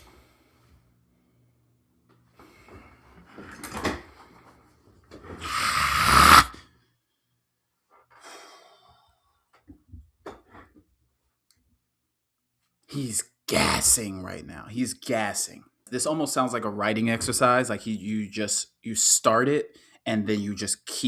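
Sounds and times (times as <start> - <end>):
man exhaling loudly: 5.4 - 6.6
quiet breathing: 19.7 - 20.1.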